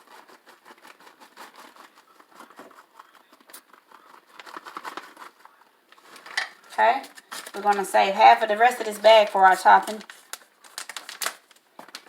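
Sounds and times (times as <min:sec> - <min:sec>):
plastic bag crinkling: 0:00.0 - 0:12.0.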